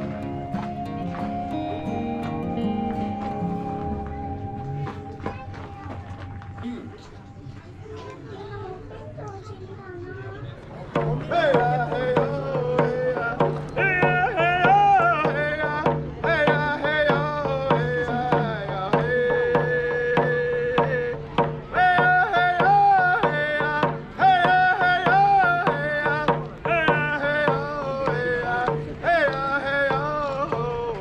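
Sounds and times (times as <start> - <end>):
pulsing beat: 0.0 - 7.6
sliding melody: 0.0 - 8.0.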